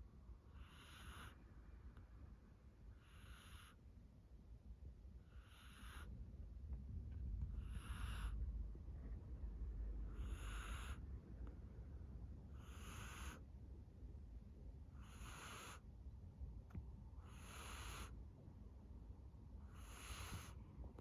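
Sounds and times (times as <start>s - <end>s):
cat snoring: 0.5s - 1.4s, 3.0s - 3.8s, 5.2s - 6.1s, 7.6s - 8.4s, 10.1s - 11.0s, 12.5s - 13.5s, 15.0s - 15.8s, 17.2s - 18.2s, 19.6s - 20.6s.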